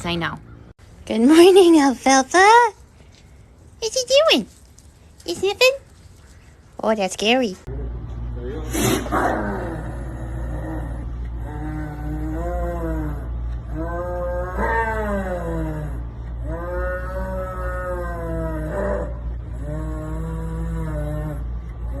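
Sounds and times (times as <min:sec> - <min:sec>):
steady low hum: 0:00.0 - 0:22.0
large wild cat moaning call: 0:09.0 - 0:22.0.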